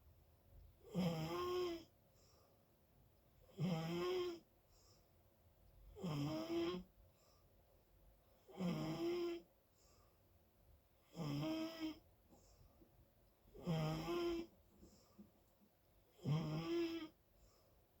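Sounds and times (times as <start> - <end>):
loud snoring: 0.9 - 1.9, 3.5 - 4.4, 6.0 - 6.9, 8.5 - 9.4, 11.1 - 12.0, 13.6 - 14.5, 16.2 - 17.2
quiet breathing: 1.2 - 3.0, 4.3 - 18.0.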